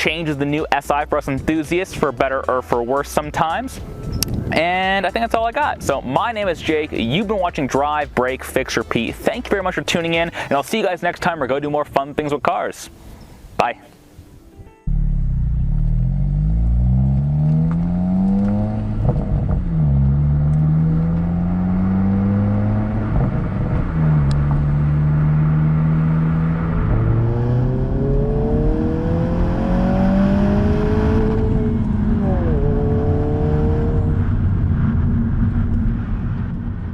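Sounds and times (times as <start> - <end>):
car engine accelerating through gears: 14.9 - 36.9.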